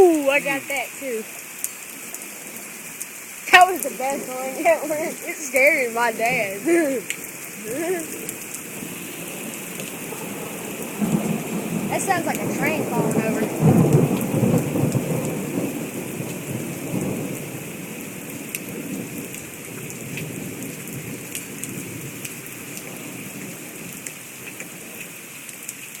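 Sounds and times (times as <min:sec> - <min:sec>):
sharp drips: 0:00.0 - 0:16.5
steady rain: 0:00.0 - 0:26.0
thunder rumbling: 0:03.3 - 0:24.0.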